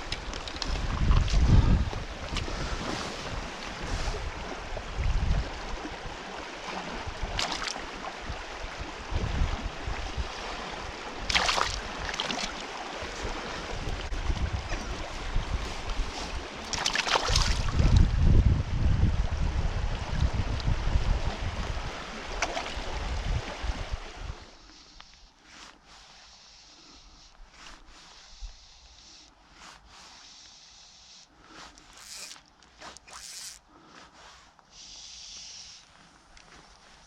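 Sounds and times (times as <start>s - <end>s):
wind buffeting microphone: 0.0s - 6.2s, 8.2s - 12.2s, 13.1s - 16.6s, 17.3s - 24.4s.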